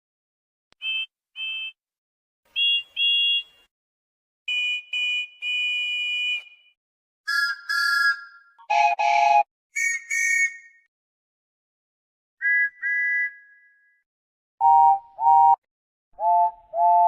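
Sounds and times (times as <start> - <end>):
train whistle toots: 7.3 - 10.7
lower-pitched train whistle: 7.3 - 10.8.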